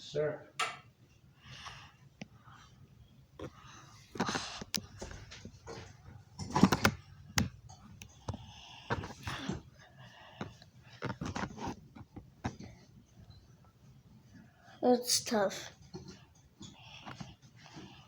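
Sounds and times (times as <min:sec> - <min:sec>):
clicks and knocks of handling: 0:03.4 - 0:09.6.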